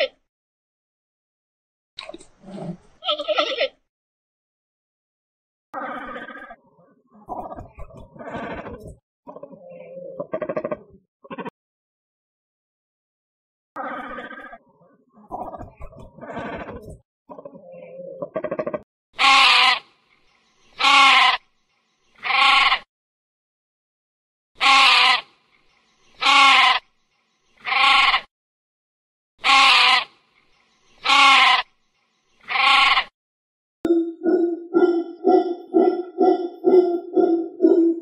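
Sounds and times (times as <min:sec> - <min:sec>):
animal bleating: 0:02.6 - 0:03.8, 0:05.8 - 0:06.6, 0:10.3 - 0:11.5, 0:13.8 - 0:14.6, 0:19.2 - 0:19.9, 0:20.8 - 0:21.4, 0:22.2 - 0:22.9, 0:24.6 - 0:25.3, 0:26.2 - 0:26.8, 0:27.6 - 0:28.3, 0:29.4 - 0:30.1, 0:31.0 - 0:31.7, 0:32.4 - 0:33.2
tune with chimes: 0:33.9 - 0:34.6.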